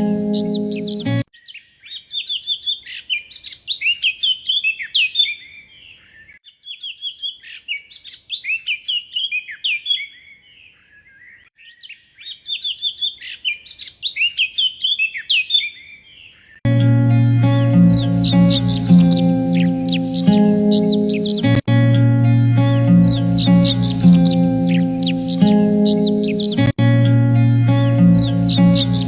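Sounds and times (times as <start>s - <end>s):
background music: 0.0s - 1.3s, 16.7s - 29.0s
songbirds chirping and trilling: 0.0s - 29.0s.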